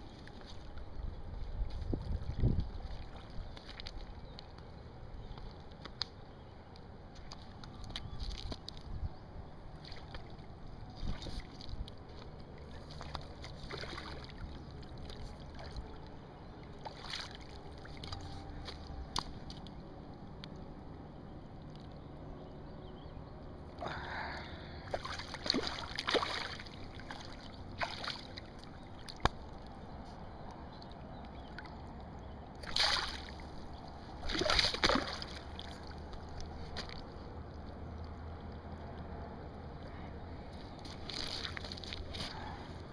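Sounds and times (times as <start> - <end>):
river and wind: 0.0 - 42.9
fish thrashing and splashing: 9.7 - 16.0, 24.9 - 29.5, 32.6 - 33.6, 34.2 - 37.7, 40.8 - 42.5.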